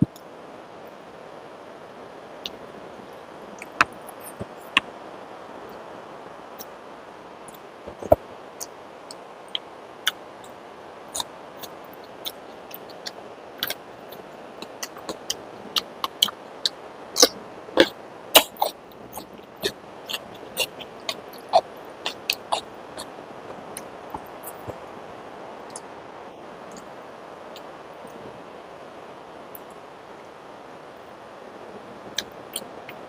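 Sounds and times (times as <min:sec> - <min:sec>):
background hiss: 0:00.0 - 0:33.0
wet chewing mouth clicks: 0:11.2 - 0:24.8.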